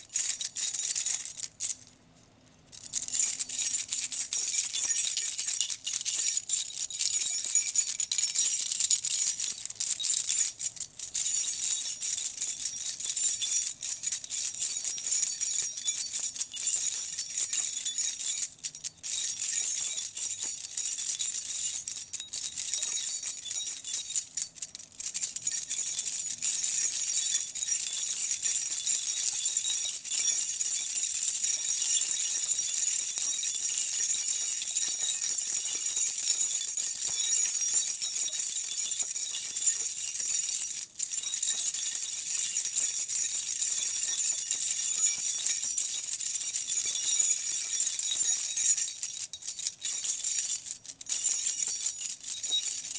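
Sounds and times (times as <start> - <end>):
keys jangling: 0.0 - 1.9, 2.8 - 52.9.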